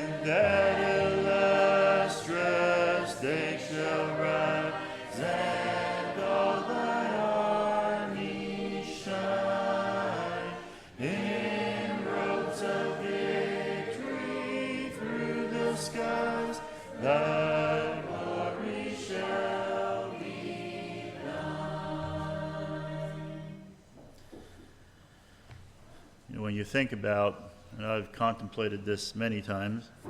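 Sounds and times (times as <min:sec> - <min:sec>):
congregation singing a hymn: 0:00.0 - 0:23.8.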